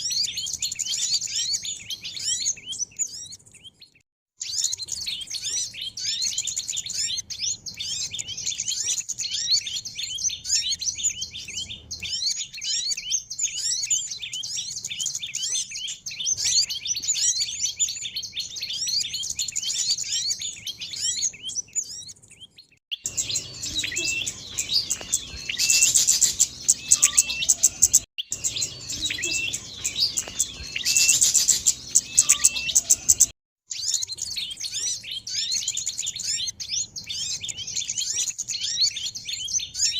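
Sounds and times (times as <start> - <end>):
bird twittering: 0.0 - 39.9
songbirds chattering: 0.0 - 39.9
loud high bird rattle: 23.1 - 33.3.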